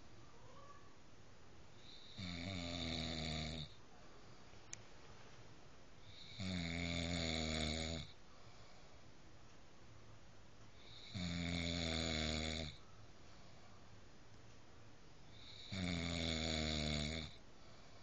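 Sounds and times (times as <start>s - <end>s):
person snoring: 1.8s - 3.8s, 6.0s - 8.2s, 10.8s - 12.8s, 15.3s - 17.4s
faint click: 4.7s - 4.9s.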